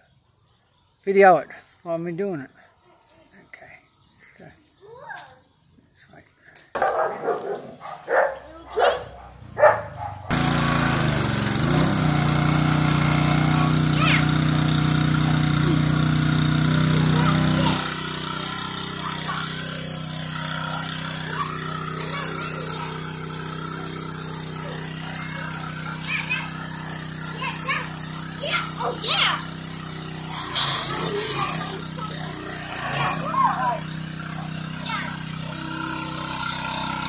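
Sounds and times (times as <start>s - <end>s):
dog barking: 6.8s - 10.3s
pressure washer running: 10.3s - 37.0s.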